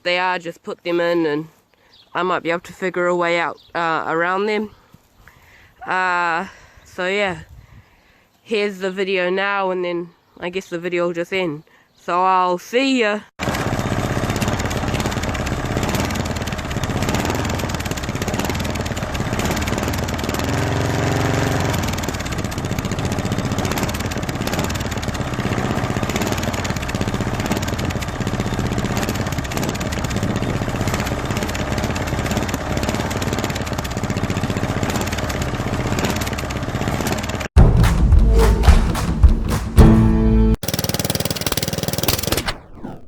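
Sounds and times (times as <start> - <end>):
lawn mower engine running: 13.4 - 37.1, 40.0 - 42.5.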